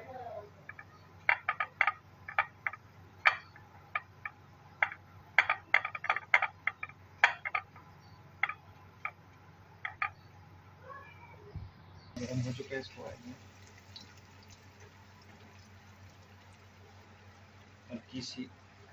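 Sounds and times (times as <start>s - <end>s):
hot oil crackling in a pan: 12.2s - 17.7s.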